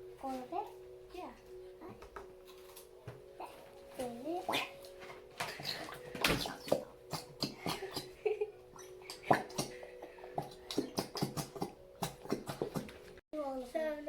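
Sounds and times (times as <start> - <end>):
plastic bottle and bowl clicking: 4.8 - 8.1.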